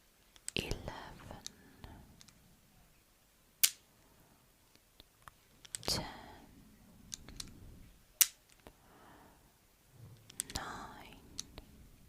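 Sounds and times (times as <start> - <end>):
soft ticks: 10.2 - 11.7.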